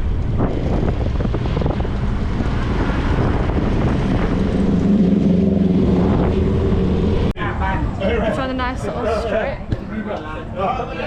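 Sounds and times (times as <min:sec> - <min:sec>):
wind and road noise: 0:00.0 - 0:11.0.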